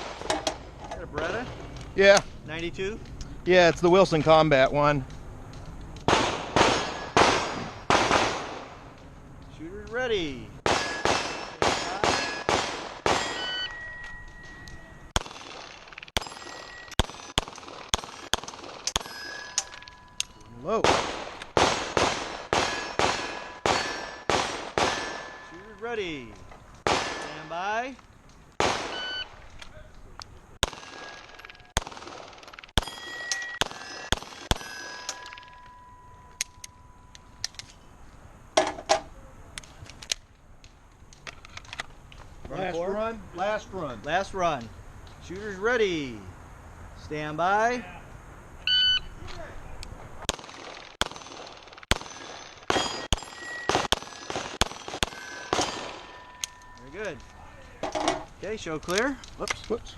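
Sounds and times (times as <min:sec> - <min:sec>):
pistol shots: 0:06.0 - 0:08.8, 0:10.6 - 0:13.7, 0:15.2 - 0:19.8, 0:20.8 - 0:25.5, 0:26.8 - 0:27.5, 0:28.6 - 0:29.3, 0:30.6 - 0:35.5, 0:50.2 - 0:56.6
steel plates ringing: 0:10.8 - 0:12.5, 0:13.1 - 0:15.1, 0:16.2 - 0:17.4, 0:18.9 - 0:20.8, 0:22.6 - 0:26.2, 0:32.8 - 0:37.4, 0:52.0 - 0:58.4.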